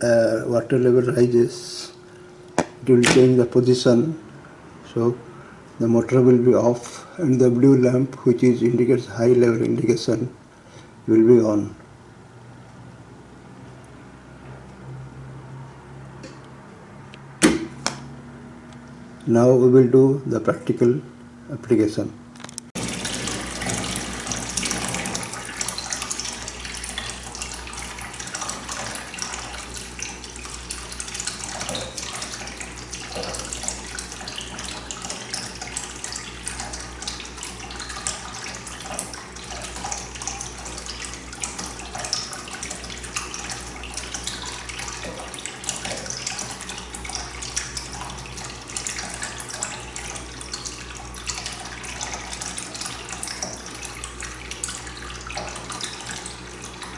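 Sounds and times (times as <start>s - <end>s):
water pouring into a tank: 22.8s - 56.9s.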